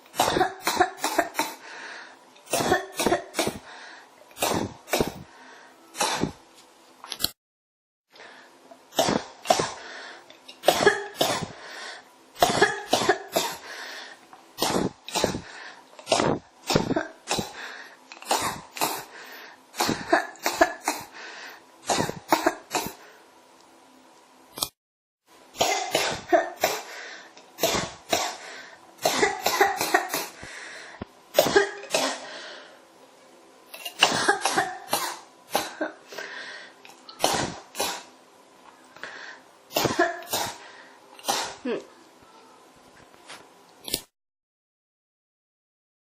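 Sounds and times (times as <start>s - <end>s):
person coughing: 0.2s - 1.6s, 2.5s - 3.6s, 6.0s - 6.4s, 9.0s - 9.8s, 10.6s - 11.6s, 12.4s - 13.7s, 14.6s - 17.6s, 18.2s - 19.1s, 19.8s - 21.2s, 21.8s - 23.0s, 25.6s - 27.0s, 27.6s - 30.4s, 31.4s - 32.4s, 33.8s - 36.2s, 37.2s - 38.1s, 39.7s - 40.6s, 41.2s - 41.9s.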